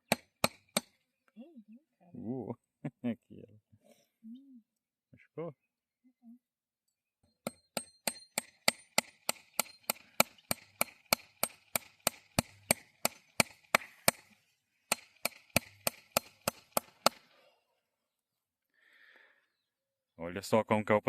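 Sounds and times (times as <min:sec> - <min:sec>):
rapid sharp knocks: 0:07.5 - 0:14.3, 0:14.9 - 0:17.2.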